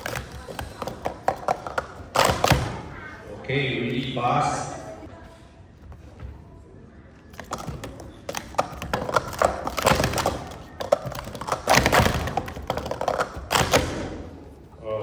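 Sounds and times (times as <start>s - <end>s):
plastic cups clattering: 0.0s - 2.9s, 7.3s - 14.4s.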